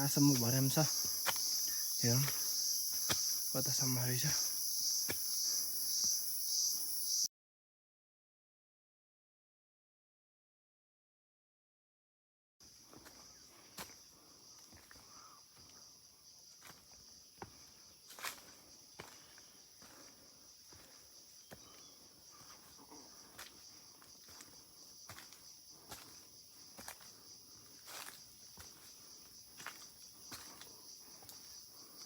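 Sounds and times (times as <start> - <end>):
footsteps on a trail: 0.0 - 7.2, 12.6 - 32.0
high-pitched insect drone: 0.0 - 7.3.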